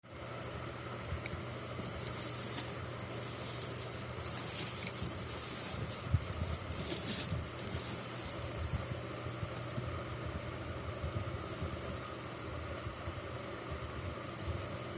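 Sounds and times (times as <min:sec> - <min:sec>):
low steady hum: 0:00.0 - 0:14.9
packaging crinkling: 0:01.8 - 0:10.4.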